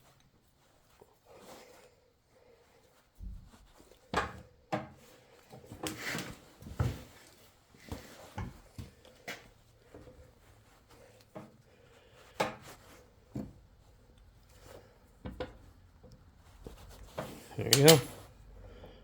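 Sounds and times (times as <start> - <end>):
parts clicking and knocking: 17.6 - 18.2.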